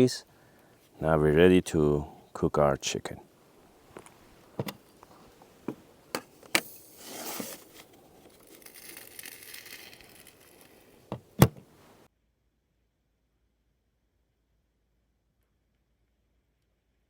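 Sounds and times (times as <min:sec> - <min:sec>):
food crinkling and rustling: 0:03.8 - 0:12.0.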